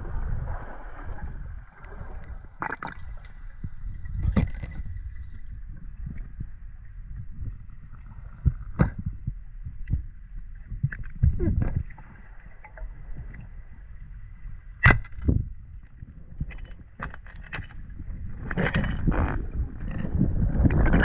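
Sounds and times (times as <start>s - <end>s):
low rumble: 0.0s - 16.0s
water sloshing and gurgling: 0.0s - 21.0s.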